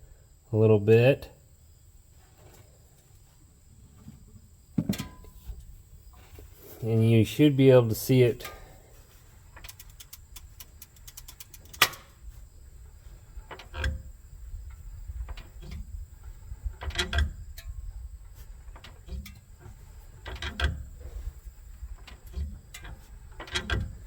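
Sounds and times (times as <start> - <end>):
dull clunking knocks: 3.8 - 6.4
sharp click: 9.6 - 12.1.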